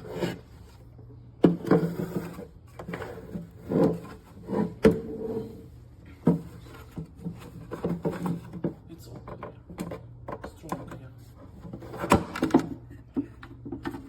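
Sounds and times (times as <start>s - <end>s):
plastic rubbing and scraping: 1.4s - 10.1s.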